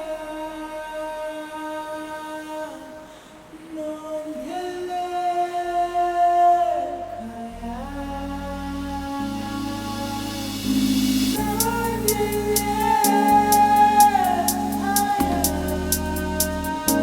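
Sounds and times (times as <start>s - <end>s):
low bass: 6.8s - 17.0s.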